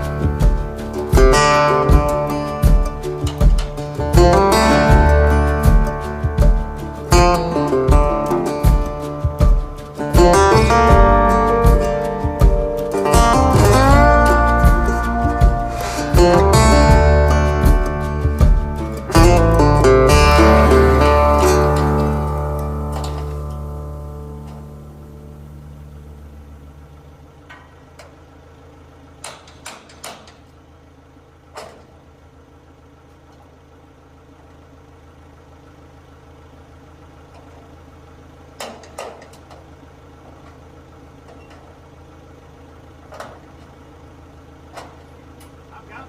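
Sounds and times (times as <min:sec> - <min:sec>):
sharp knocks and bangs: 0:00.0 - 0:24.7
engine idling: 0:00.0 - 0:46.0.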